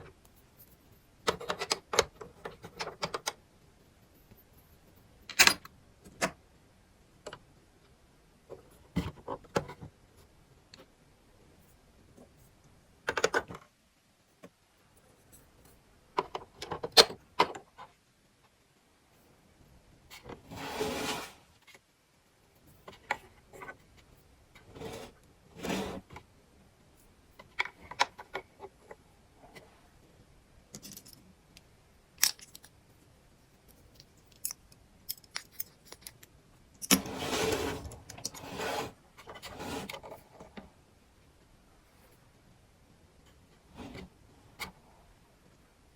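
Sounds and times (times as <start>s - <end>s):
plastic toy pieces clicking: 32.2s - 32.7s.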